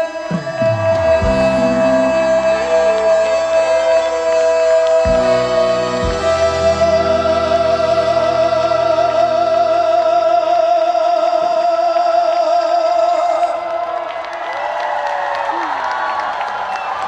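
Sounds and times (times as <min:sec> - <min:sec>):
person singing long vibrato note: 0:00.0 - 0:13.9
band sustained chord: 0:01.1 - 0:10.4.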